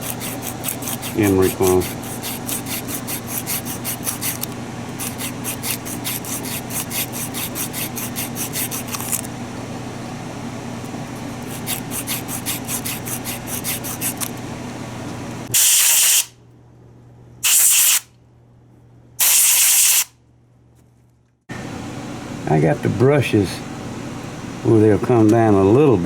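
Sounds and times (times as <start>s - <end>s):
sandpaper rubbing on metal: 0.0s - 9.2s, 11.4s - 14.3s
spray hissing: 15.6s - 16.3s, 17.4s - 18.0s, 19.2s - 20.1s.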